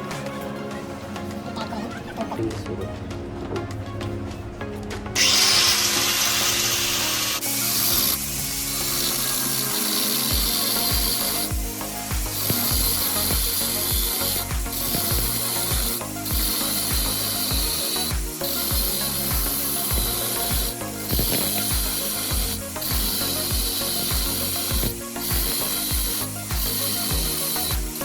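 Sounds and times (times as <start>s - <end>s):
background music beat: 0.0s - 28.0s
angle grinder cutting: 5.2s - 28.0s.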